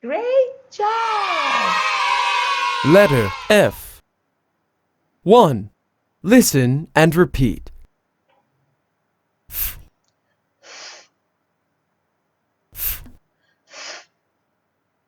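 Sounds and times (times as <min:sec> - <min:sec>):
person saying fff sound: 0:02.9 - 0:04.0, 0:05.3 - 0:05.7, 0:06.3 - 0:07.8.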